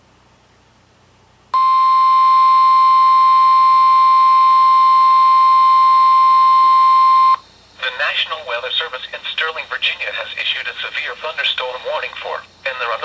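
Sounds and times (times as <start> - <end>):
steady alarm tone: 1.6 - 7.4
faint hiss: 7.4 - 13.0.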